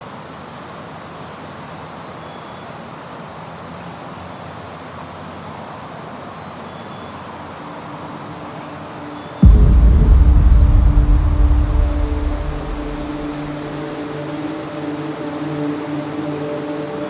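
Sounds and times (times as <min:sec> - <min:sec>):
low rumble and hiss: 0:09.4 - 0:14.2.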